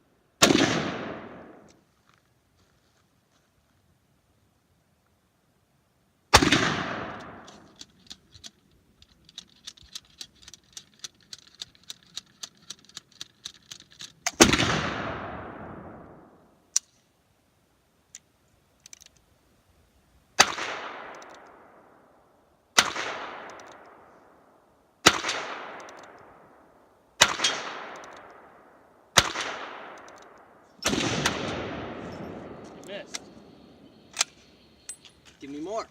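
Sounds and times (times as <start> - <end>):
light clicks: 23.4 - 24.0, 25.8 - 26.3
gunshots with echo: 30.8 - 34.4.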